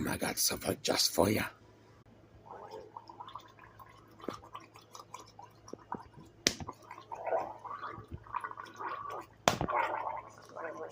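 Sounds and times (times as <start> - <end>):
gurgling bubbling: 2.4 - 10.9.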